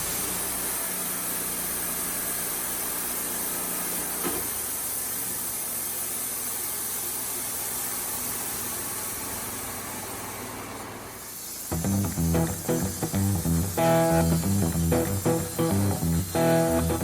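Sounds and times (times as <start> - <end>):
band blade hissing: 11.3 - 17.0
sawmill engine humming: 11.6 - 17.0.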